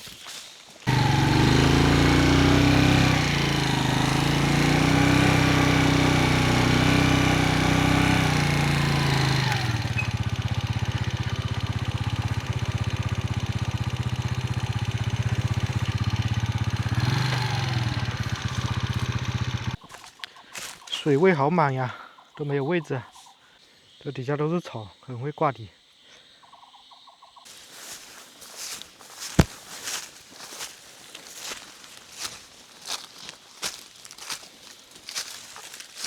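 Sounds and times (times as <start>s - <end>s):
engine running: 0.8s - 19.8s.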